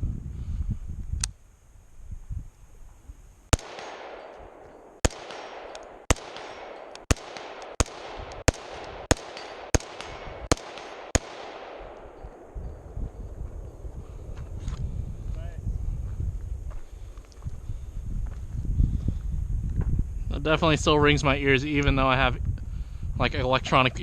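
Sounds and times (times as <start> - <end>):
rifle gunshots with echo: 3.5 - 13.9.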